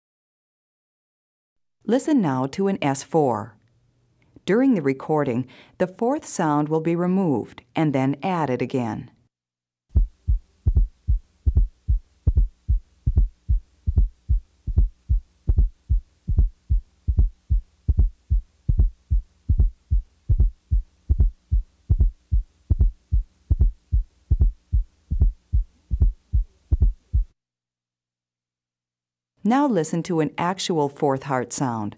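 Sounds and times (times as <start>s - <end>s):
heartbeat thuds: 9.9s - 27.4s
soft extra heartbeat: 9.9s - 27.4s
faint steady hum: 10.0s - 27.4s.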